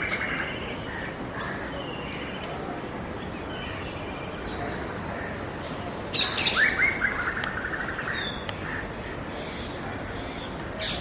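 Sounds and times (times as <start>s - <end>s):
harsh rattling bird call: 0.0s - 2.4s, 5.0s - 9.3s
faint birdsong: 0.0s - 11.0s.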